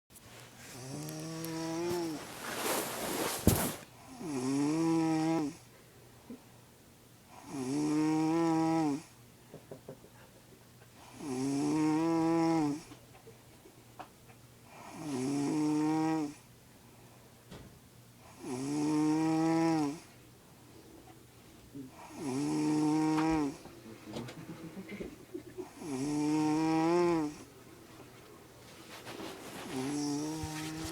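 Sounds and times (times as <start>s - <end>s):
moo-like snoring: 0.8s - 2.2s, 4.2s - 5.6s, 7.4s - 9.1s, 11.1s - 12.9s, 14.7s - 16.4s, 18.3s - 20.1s, 21.8s - 23.7s, 25.6s - 27.5s.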